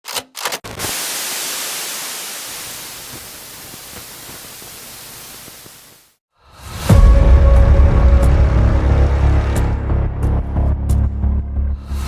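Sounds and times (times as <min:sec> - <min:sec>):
static crackles: 0:00.7 - 0:06.2
static white noise hiss: 0:01.0 - 0:06.1.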